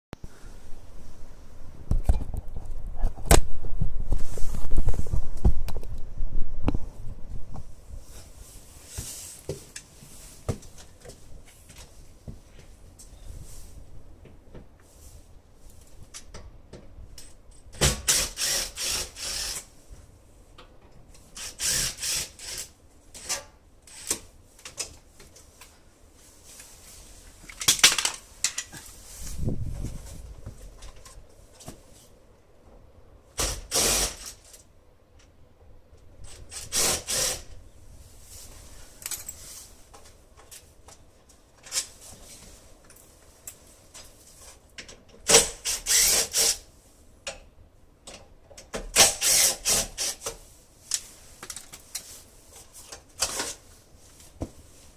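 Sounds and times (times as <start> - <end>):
quiet handling sounds: 0.2 - 17.7, 22.8 - 33.0, 37.6 - 45.2, 50.3 - 54.9.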